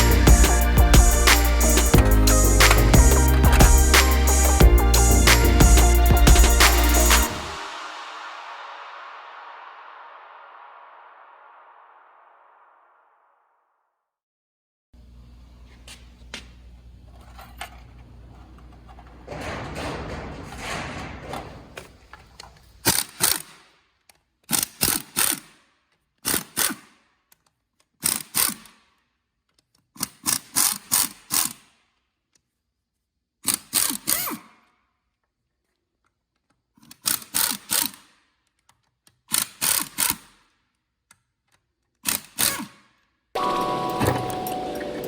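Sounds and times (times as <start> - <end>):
metal parts rustling and scraping: 17.1 - 22.8.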